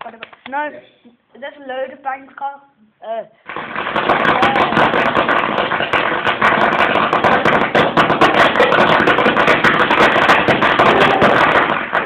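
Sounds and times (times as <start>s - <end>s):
firecracker crackling: 3.4s - 12.0s.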